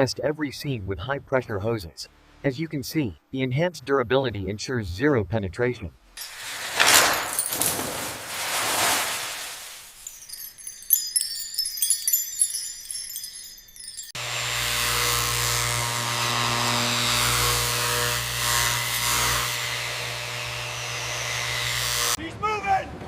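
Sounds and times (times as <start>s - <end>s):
metallic tinkling and clinking: 6.2s - 14.2s.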